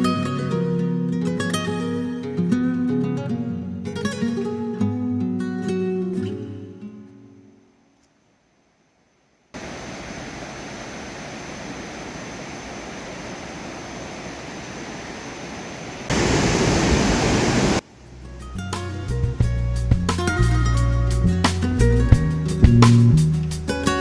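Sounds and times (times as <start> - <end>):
music: 0.0 - 7.6, 18.2 - 24.0
waterfall rushing: 9.6 - 17.8.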